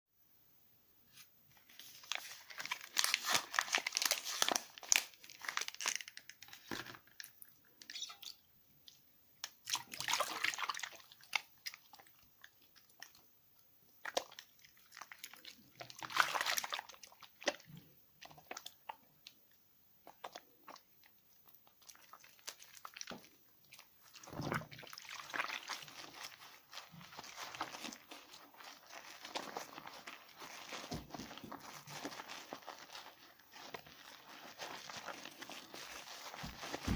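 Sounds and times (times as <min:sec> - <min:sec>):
soap lathering in wet hands: 0:08.9 - 0:36.9.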